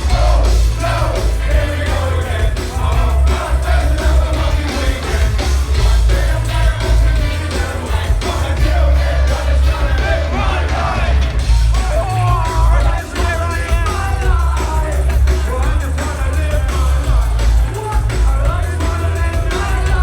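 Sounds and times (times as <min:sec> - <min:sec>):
live band playing dance music: 0:00.0 - 0:20.0
person singing or shouting: 0:07.8 - 0:15.7.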